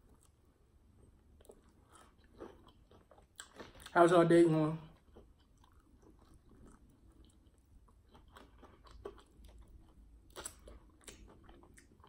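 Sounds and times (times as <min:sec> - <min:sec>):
mouth chewing smacks: 0:05.0 - 0:12.0.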